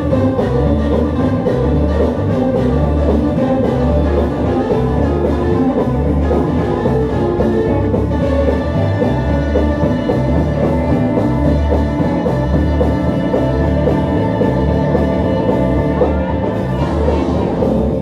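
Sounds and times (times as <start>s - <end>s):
bass line in held notes: 0.0s - 18.0s
live gospel band playing: 0.0s - 18.0s.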